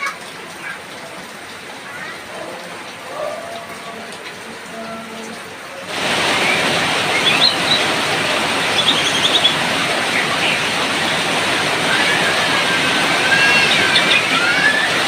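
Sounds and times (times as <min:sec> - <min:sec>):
heavy rain hissing: 0:00.0 - 0:15.0
bird chirps: 0:06.5 - 0:07.9, 0:08.8 - 0:09.6, 0:13.2 - 0:15.0.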